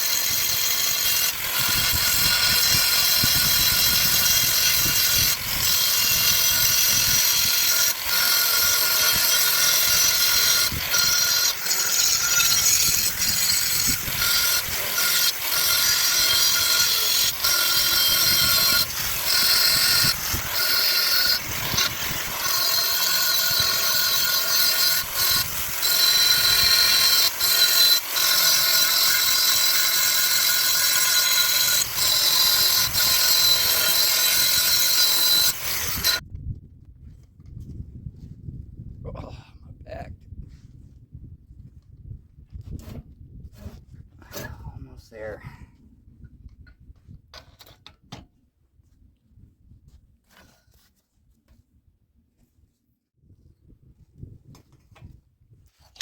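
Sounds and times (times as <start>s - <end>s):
power saw cutting: 0.0s - 36.2s.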